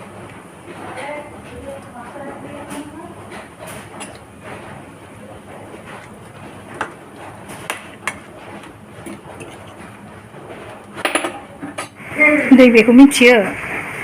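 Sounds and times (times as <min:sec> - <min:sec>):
steady hiss: 0:12.0 - 0:14.0.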